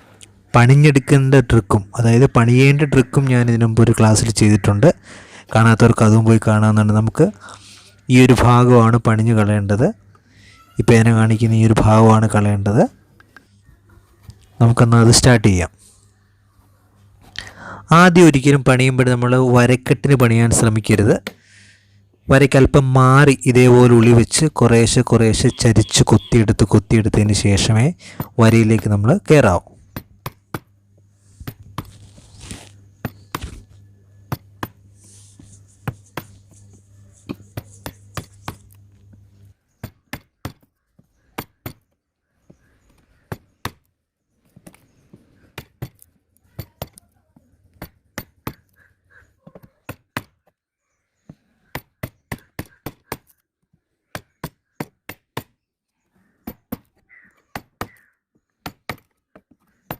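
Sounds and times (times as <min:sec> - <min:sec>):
steady low hum: 0:19.1 - 0:39.7.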